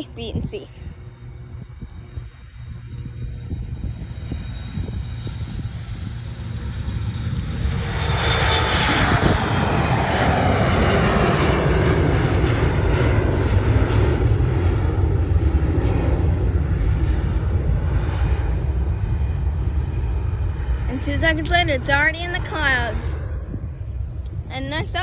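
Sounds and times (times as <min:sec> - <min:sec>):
jet engines roaring: 0:00.0 - 0:25.0.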